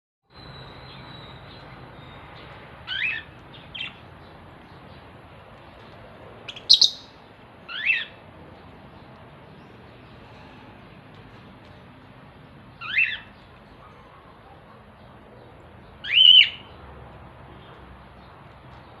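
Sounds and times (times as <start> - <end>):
high-pitched bird calls: 0.3 - 4.0, 6.5 - 8.2, 12.8 - 14.2, 16.0 - 16.7.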